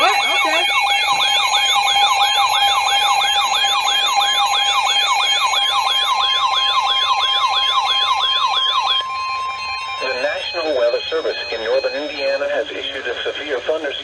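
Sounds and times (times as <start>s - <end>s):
fast warbling siren alarm: 0.0s - 13.0s
steady beeping tones: 0.0s - 14.0s
steady warning tone: 0.0s - 14.0s.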